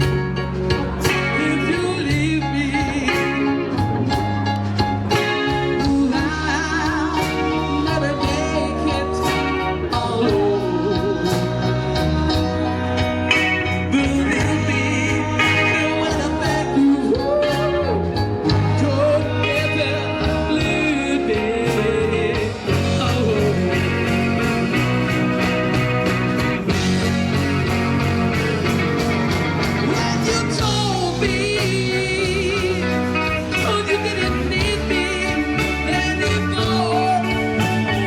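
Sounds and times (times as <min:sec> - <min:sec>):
band playing a song with vocals: 0:00.0 - 0:38.0.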